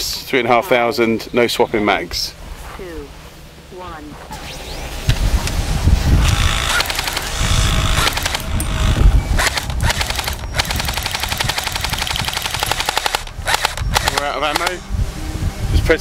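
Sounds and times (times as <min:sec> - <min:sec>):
airsoft rifle firing full-auto: 0:06.5 - 0:08.5, 0:09.4 - 0:14.7.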